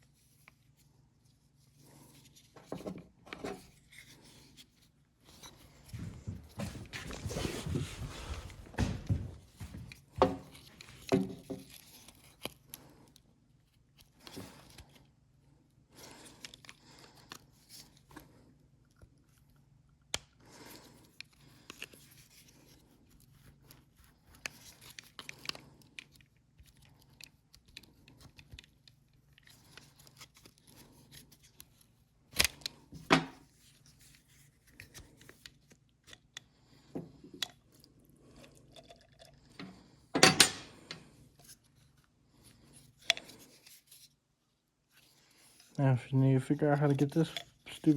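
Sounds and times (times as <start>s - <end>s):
hand tools on metal parts: 38.8s - 41.0s, 46.7s - 47.9s.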